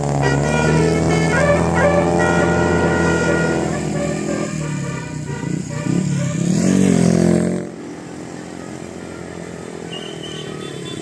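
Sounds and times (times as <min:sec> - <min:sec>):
multi-tone bus horn: 0:00.0 - 0:07.2, 0:10.0 - 0:11.0
bus engine and road noise: 0:00.0 - 0:11.0.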